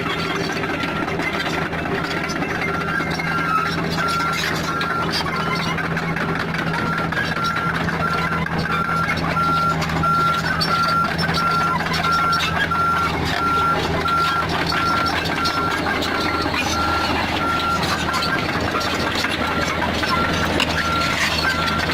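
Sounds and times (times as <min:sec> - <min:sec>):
diesel engine running: 0:00.0 - 0:21.9.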